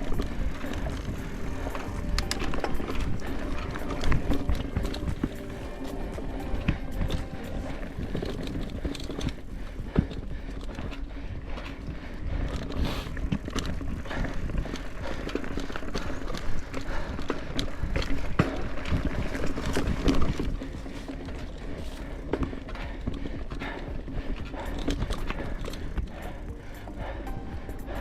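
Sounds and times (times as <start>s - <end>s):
bike knocks and rattles: 0.0s - 28.0s
bike tyres on dirt trail: 0.0s - 28.0s.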